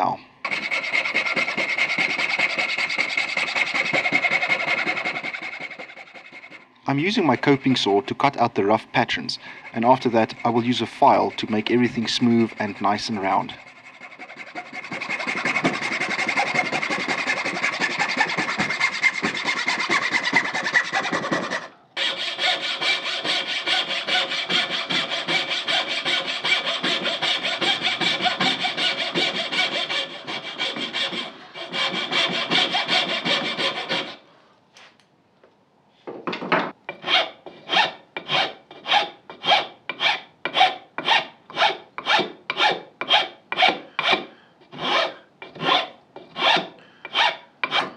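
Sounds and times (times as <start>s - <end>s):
file smoothing wood: 0.4s - 6.6s, 9.4s - 34.2s, 36.9s - 47.9s
coping saw cutting wood: 0.5s - 6.6s, 9.4s - 34.2s.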